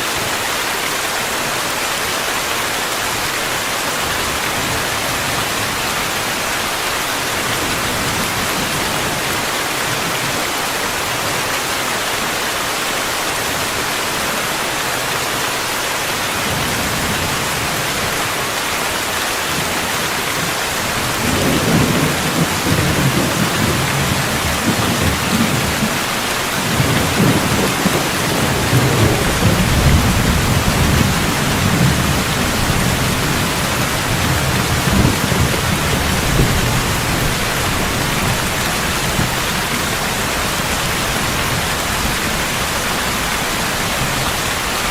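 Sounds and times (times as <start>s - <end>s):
steady rainfall hiss: 0.0s - 44.9s
rolling rumble of thunder: 20.9s - 39.3s.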